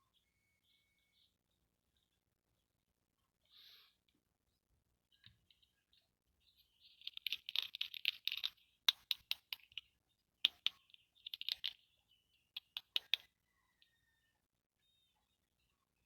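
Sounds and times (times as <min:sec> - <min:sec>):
sharp plastic clicks: 0:07.0 - 0:09.8, 0:10.4 - 0:11.8, 0:12.6 - 0:13.3
plastic crackling ticks: 0:10.5 - 0:11.8, 0:12.6 - 0:13.3.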